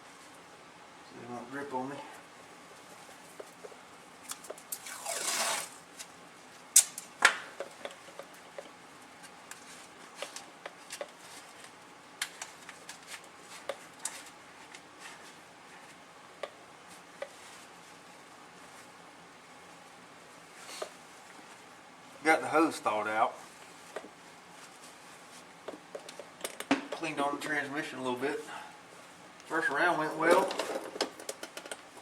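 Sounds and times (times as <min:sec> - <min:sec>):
tape pulled off a roll: 0:04.3 - 0:06.1
light taps and rustles: 0:23.8 - 0:27.1.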